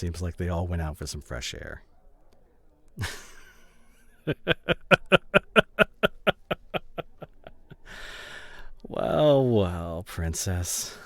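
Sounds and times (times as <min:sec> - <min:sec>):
man laughing: 0:03.0 - 0:07.8.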